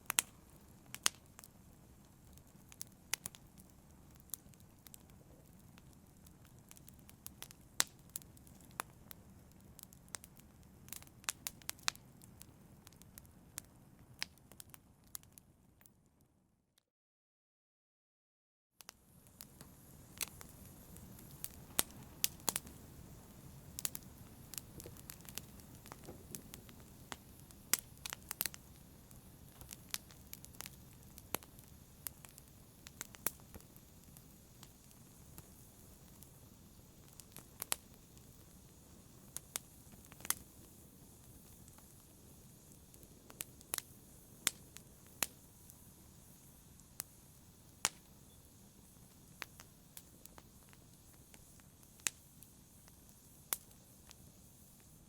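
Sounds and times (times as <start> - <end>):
burning wood popping and crackling: 0.0 - 15.4, 19.2 - 54.9
flames rushing: 19.4 - 46.2.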